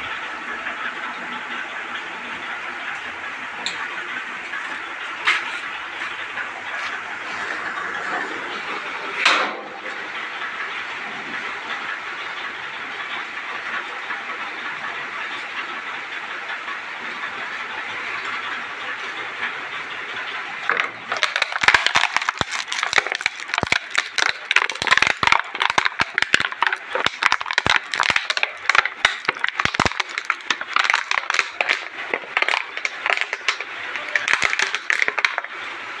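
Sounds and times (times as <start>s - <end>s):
electric arc welding crackling: 21.1s - 35.5s.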